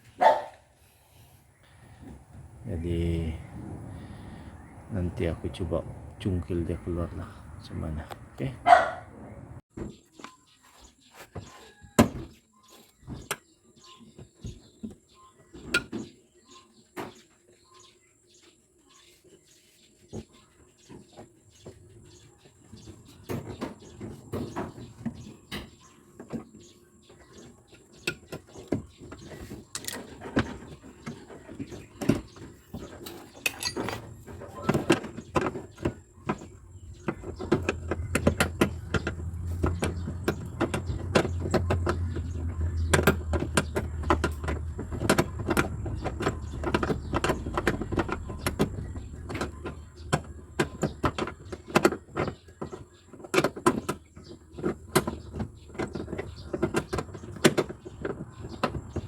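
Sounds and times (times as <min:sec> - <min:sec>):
hand tools clicking on car panels: 0:22.6 - 0:59.0.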